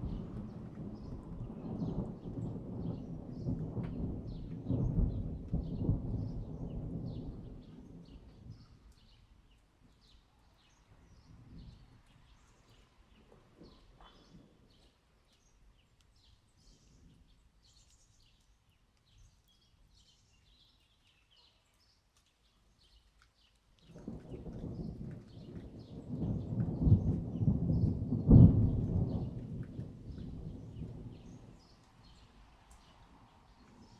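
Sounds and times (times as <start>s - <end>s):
thunder rumble: 0.0s - 8.8s, 23.9s - 33.9s.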